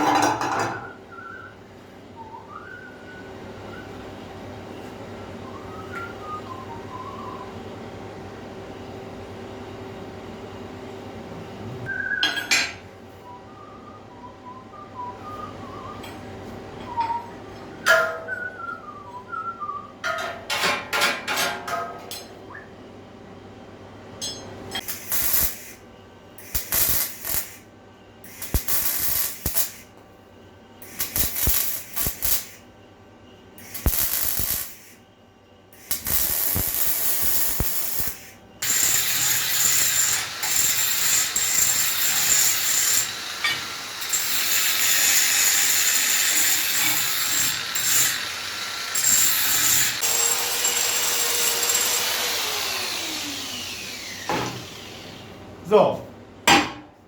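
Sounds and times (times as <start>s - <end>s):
power tool bursts on steel: 30.8s - 32.6s, 33.6s - 35.0s, 35.8s - 55.4s
rotating tool whining: 38.6s - 55.3s.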